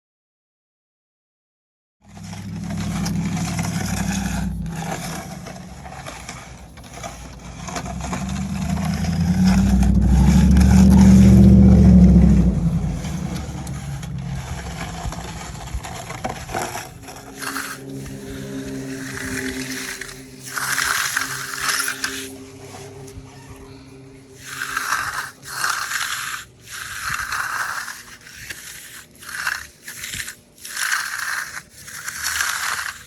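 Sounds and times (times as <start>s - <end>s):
engine running: 2.0s - 28.2s
scraping and crunching: 2.0s - 33.0s.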